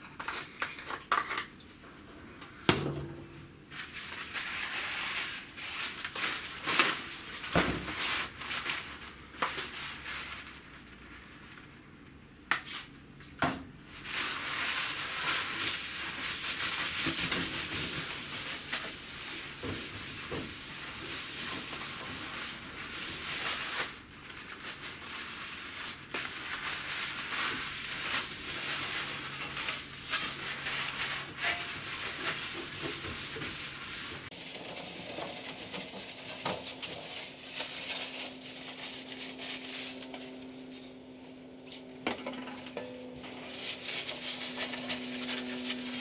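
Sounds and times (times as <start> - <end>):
sanding metal can: 14.9 - 23.8, 26.5 - 40.4, 43.2 - 46.0.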